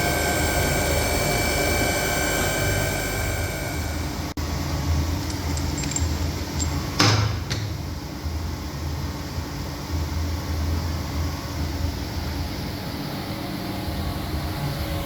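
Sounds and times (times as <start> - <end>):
machine humming: 0.0 - 4.4.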